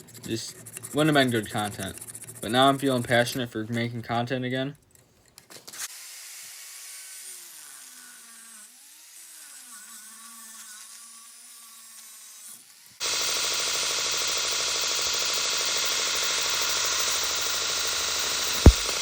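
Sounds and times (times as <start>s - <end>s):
small electric power tool running: 0.0s - 2.5s, 5.6s - 19.0s
loud whirring grinding tool: 5.8s - 19.0s.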